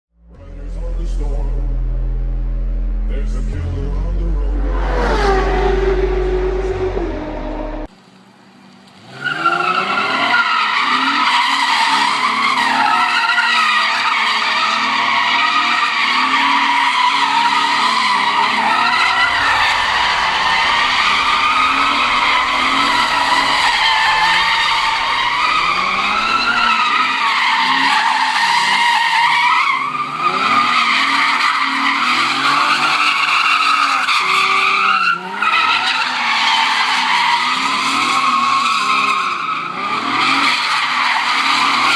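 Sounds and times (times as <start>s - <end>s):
car engine running: 0.2s - 8.9s, 13.6s - 28.8s
car tyres squealing: 9.0s - 41.9s.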